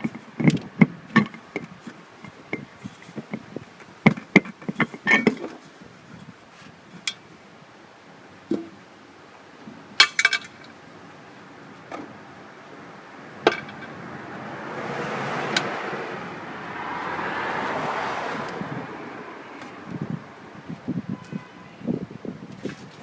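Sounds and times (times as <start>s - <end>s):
metal parts clinking: 10.0s - 10.6s
rushing noise: 12.8s - 21.0s.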